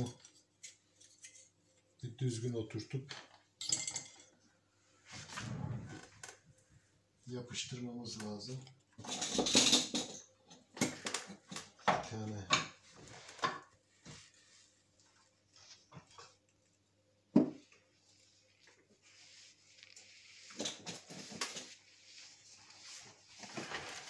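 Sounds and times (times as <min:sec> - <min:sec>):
scratchy scraping and rustling: 0:18.5 - 0:24.0.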